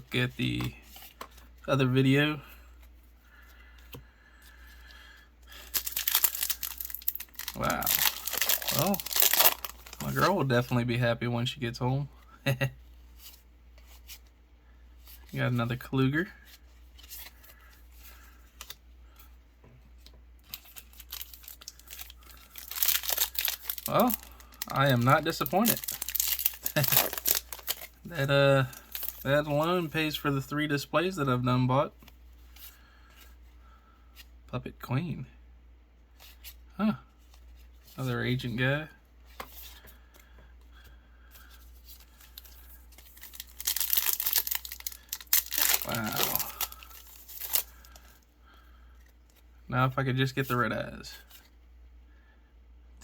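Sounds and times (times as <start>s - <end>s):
trading cards rustling: 0.2s - 10.9s, 20.0s - 30.5s, 41.3s - 48.2s
trading cards clicking and rustling: 5.6s - 10.4s, 20.5s - 27.9s.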